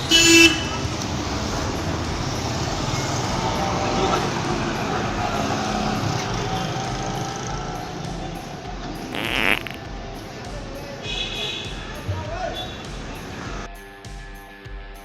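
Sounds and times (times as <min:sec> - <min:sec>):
vehicle engines passing: 0:00.6 - 0:09.1, 0:11.8 - 0:13.7
tyres passing: 0:00.8 - 0:13.7.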